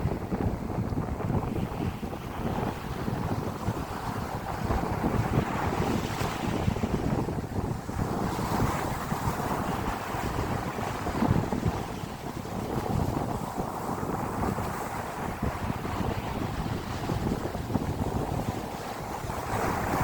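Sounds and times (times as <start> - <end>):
wind buffeting microphone: 0.0 - 20.0.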